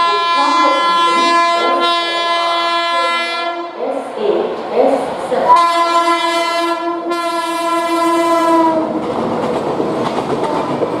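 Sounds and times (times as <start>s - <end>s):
locomotive horn blast: 0.0s - 3.8s, 5.5s - 8.9s
train rumble and wheel clatter: 0.0s - 11.0s.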